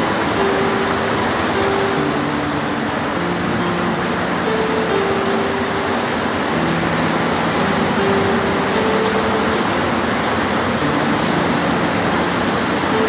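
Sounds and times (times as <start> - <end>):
heavy rain hissing: 0.0 - 13.0.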